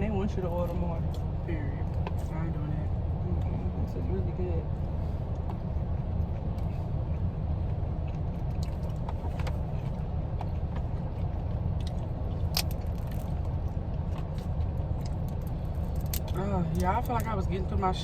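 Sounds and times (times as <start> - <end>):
car rumble: 0.0 - 18.0
chewing: 5.0 - 17.3.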